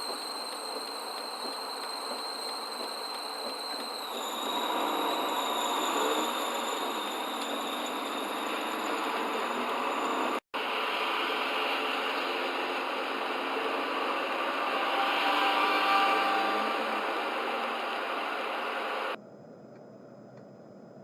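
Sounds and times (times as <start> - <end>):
high-pitched whine: 0.0 - 19.2.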